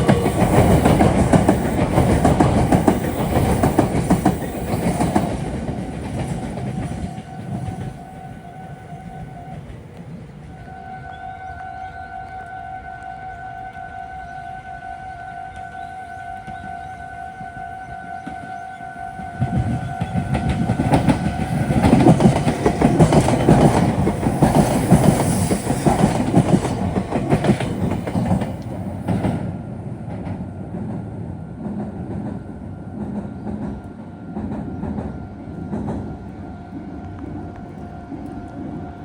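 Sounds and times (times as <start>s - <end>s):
train wheels clattering: 0.0s - 10.5s, 19.2s - 36.2s.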